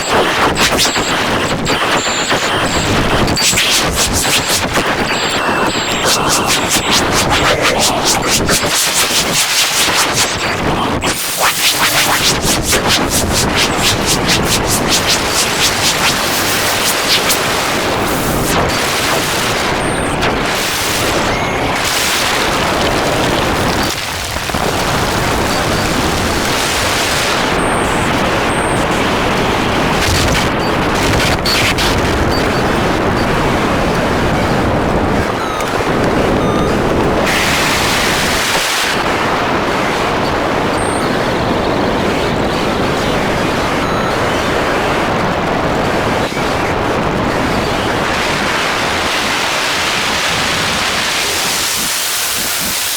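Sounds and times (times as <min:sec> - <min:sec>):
harsh noise music: 0:02.4 - 0:18.4.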